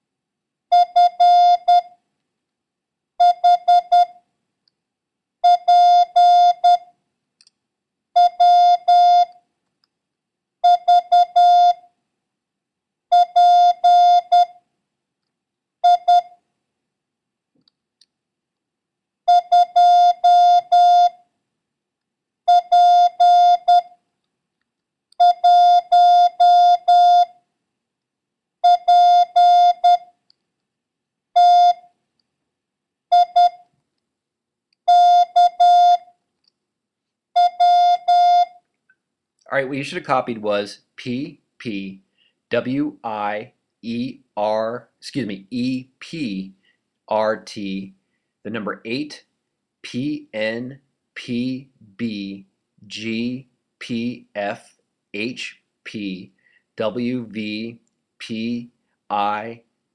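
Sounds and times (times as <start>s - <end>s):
morse code beeps: 0.7s - 1.9s, 3.2s - 4.1s, 5.4s - 6.8s, 8.2s - 9.3s, 10.6s - 11.8s, 13.1s - 14.6s, 15.8s - 16.3s, 19.3s - 21.2s, 22.5s - 23.9s, 25.2s - 27.3s, 28.6s - 30.1s, 31.4s - 31.8s, 33.1s - 33.6s, 34.9s - 36.1s, 37.4s - 38.6s.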